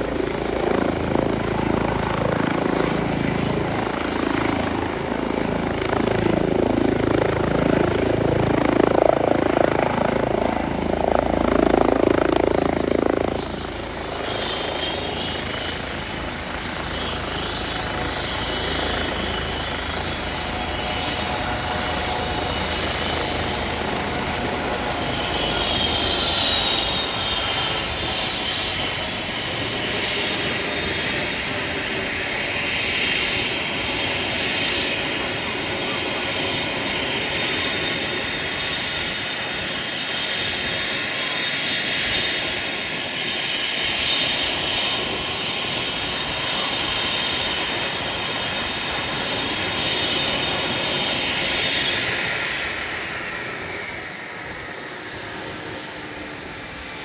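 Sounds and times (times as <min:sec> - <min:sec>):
helicopter rotor and turbine: 0:00.0 - 0:57.0
faint high whine: 0:39.0 - 0:57.0.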